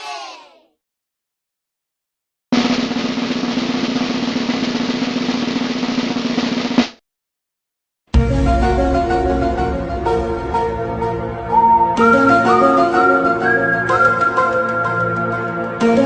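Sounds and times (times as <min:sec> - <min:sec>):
drum roll: 0:02.5 - 0:07.0, 0:08.2 - 0:12.6
sharp drum hit: 0:02.6 - 0:07.0, 0:08.2 - 0:11.4
melodic music: 0:08.2 - 0:16.0.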